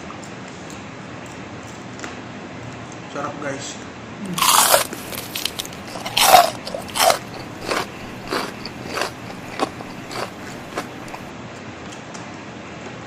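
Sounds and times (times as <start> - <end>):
fried chicken crunching while chewed: 4.3 - 11.3.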